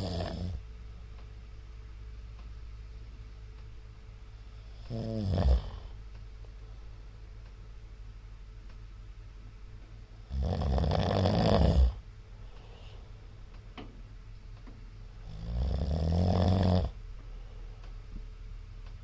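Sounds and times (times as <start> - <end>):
man snoring loudly: 0.0 - 0.6, 4.8 - 5.9, 10.3 - 12.0, 15.2 - 17.0
steady low hum: 0.0 - 19.0.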